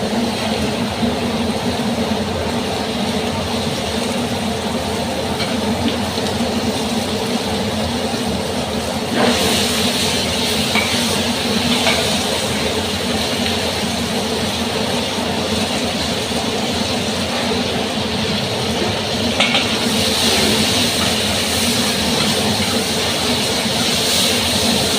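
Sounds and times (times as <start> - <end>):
stir-fry sizzling in a pan: 0.0 - 24.9.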